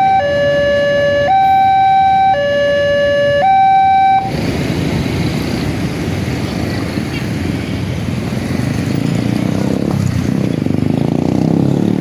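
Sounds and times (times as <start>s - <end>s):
level-crossing two-tone siren: 0.0s - 4.4s
passing vehicles: 0.0s - 12.0s.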